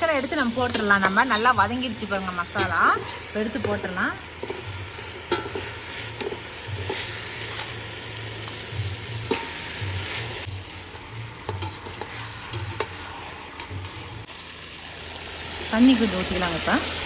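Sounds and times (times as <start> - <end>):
food sizzling in oil: 0.0 - 17.0
ladle knocking and scraping pan: 2.5 - 7.8, 9.2 - 10.2, 11.4 - 14.1.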